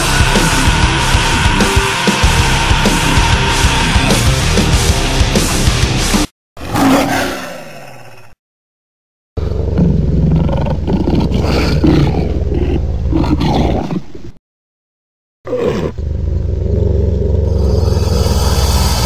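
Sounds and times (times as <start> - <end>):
creature falling cry: 6.6 - 8.2
creature growling roar: 6.6 - 8.4, 9.4 - 14.1, 15.5 - 19.0.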